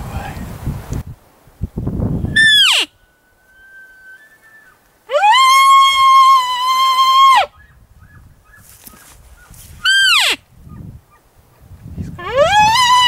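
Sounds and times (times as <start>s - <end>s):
elk bugling: 2.4s - 8.7s, 9.8s - 11.3s, 12.2s - 13.0s.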